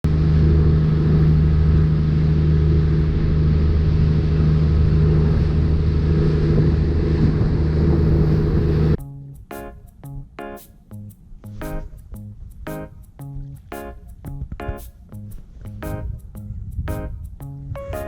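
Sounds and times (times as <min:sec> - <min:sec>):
boat engine droning: 0:00.1 - 0:09.0.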